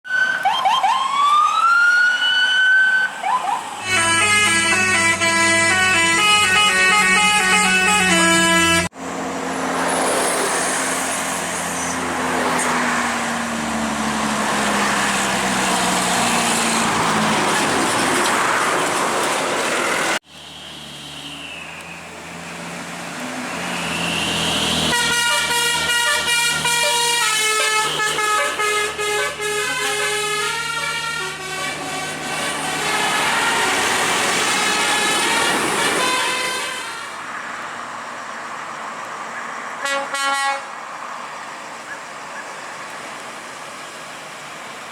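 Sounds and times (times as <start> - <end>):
multi-note vehicle horns: 3.8 - 8.9, 23.7 - 37.3, 39.8 - 40.8
heavy vehicle engine passing: 3.8 - 39.8.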